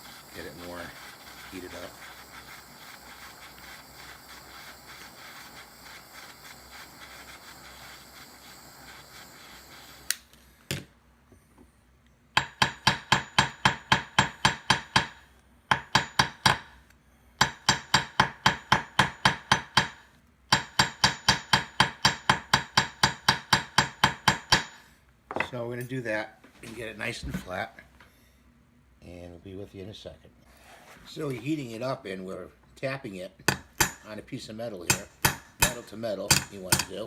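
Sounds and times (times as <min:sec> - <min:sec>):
torch flame hissing: 0:00.0 - 0:10.7, 0:33.5 - 0:37.0
hammer tapping on metal: 0:12.4 - 0:16.7, 0:17.4 - 0:24.8, 0:33.4 - 0:34.1, 0:34.9 - 0:37.0.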